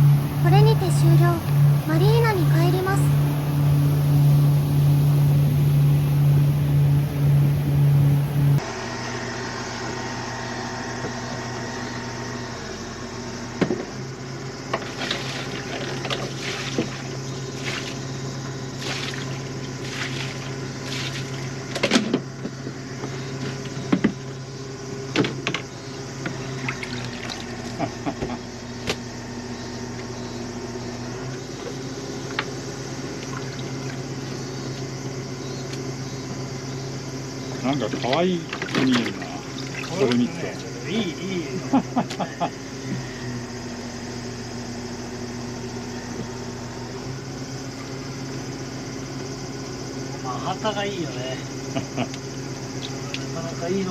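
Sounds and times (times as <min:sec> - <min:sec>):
steady low hum: 0:00.0 - 0:53.9
water running and splashing: 0:14.8 - 0:18.0, 0:18.8 - 0:21.5, 0:26.5 - 0:27.8, 0:38.0 - 0:40.5.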